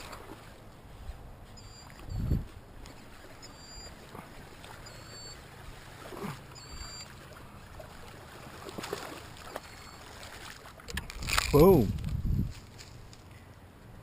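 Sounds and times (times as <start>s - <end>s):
lure splashing on water: 2.8s - 11.8s.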